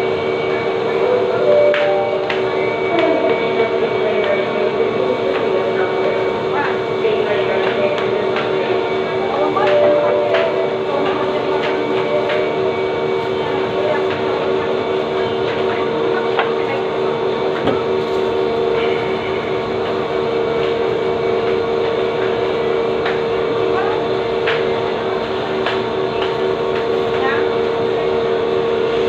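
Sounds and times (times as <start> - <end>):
machine hum: 0.0 - 7.2, 8.0 - 13.4.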